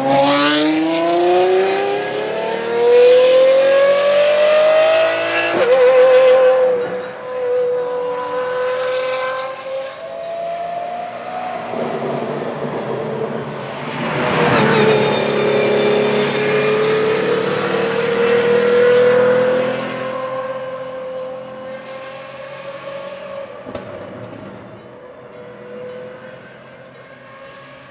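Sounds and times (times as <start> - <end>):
sports car engine at high revs: 0.0 - 7.0, 11.2 - 24.4.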